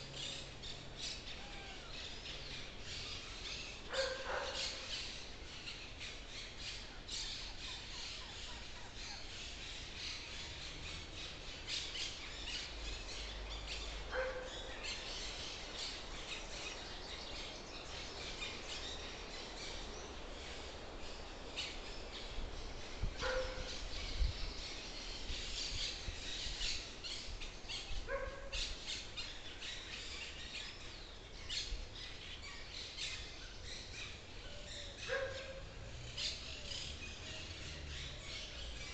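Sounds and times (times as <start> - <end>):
birds chirping: 0.0 - 38.9
harsh call or distant bark: 3.8 - 5.0, 14.0 - 15.0, 23.2 - 23.9, 28.0 - 28.8, 34.6 - 38.9.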